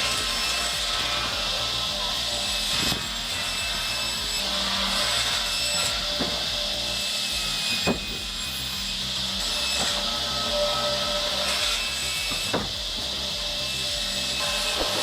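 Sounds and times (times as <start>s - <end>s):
saw cutting through wood: 0.0s - 15.0s.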